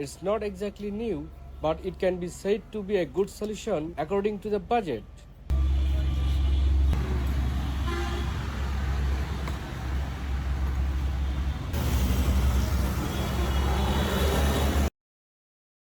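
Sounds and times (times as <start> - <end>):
vehicle engines rumbling: 0.0 - 14.9
short horn toot: 5.5 - 7.0, 7.7 - 8.4.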